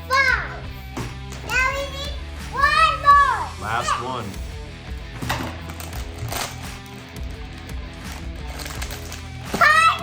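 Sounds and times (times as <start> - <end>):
child exclaiming loudly: 0.0 - 0.6, 1.5 - 4.2, 9.5 - 10.0
background music with beat: 0.0 - 10.0.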